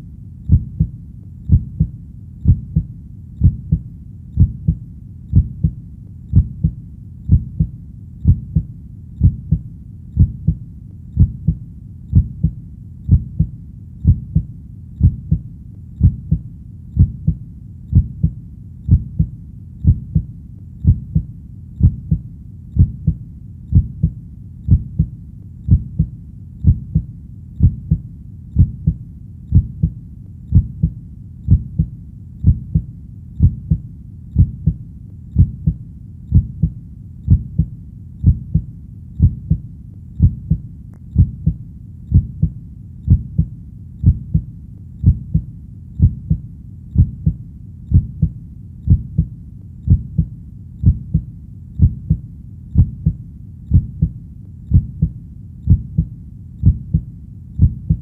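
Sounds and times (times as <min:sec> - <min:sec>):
heartbeat double thump: 0:00.5 - 0:00.9, 0:01.5 - 0:03.8, 0:04.4 - 0:09.6, 0:10.2 - 0:10.6, 0:11.2 - 0:15.4, 0:16.0 - 0:16.4, 0:17.0 - 0:22.2, 0:22.8 - 0:25.1, 0:25.7 - 0:28.0, 0:28.6 - 0:33.8, 0:34.4 - 0:34.8, 0:35.4 - 0:39.6, 0:40.2 - 0:40.6, 0:41.2 - 0:46.4, 0:47.0 - 0:49.3, 0:49.9 - 0:52.2, 0:52.8 - 0:58.0.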